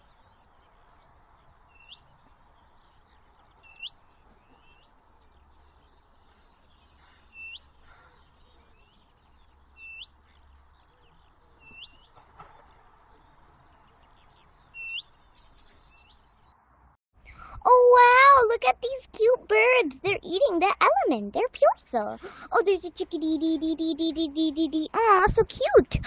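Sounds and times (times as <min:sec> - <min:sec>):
outdoor background hiss: 0:00.0 - 0:16.8
faint bird chirps: 0:00.0 - 0:16.9.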